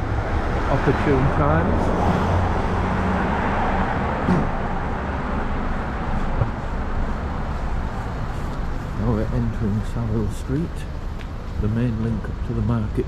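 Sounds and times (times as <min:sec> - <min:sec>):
vehicle passing close: 0:00.0 - 0:06.7
road traffic rumble: 0:00.0 - 0:13.0.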